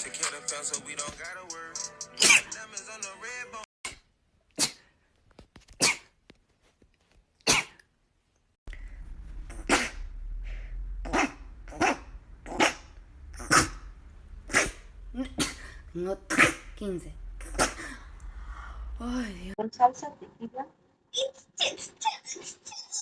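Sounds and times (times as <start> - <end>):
person sneezing: 7.4 - 7.8, 14.5 - 15.8, 17.4 - 18.1
low hum: 8.7 - 19.6.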